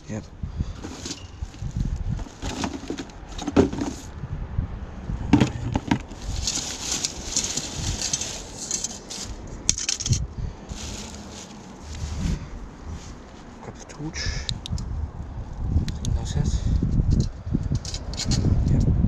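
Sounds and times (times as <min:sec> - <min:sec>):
rustling and scraping: 0:00.7 - 0:04.2, 0:05.3 - 0:13.6
junk knocking and clattering: 0:00.8 - 0:04.1, 0:05.3 - 0:10.2.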